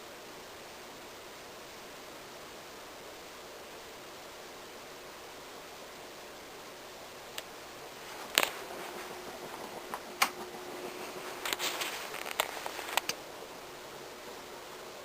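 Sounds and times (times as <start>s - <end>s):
ceiling fan air hiss: 0.0s - 15.0s
faint hum: 0.0s - 15.0s
sharp clicks and knocks: 8.1s - 13.2s.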